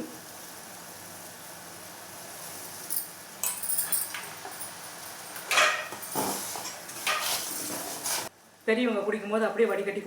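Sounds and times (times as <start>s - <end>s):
hiss of boiling pot: 0.0s - 3.4s, 4.5s - 8.6s.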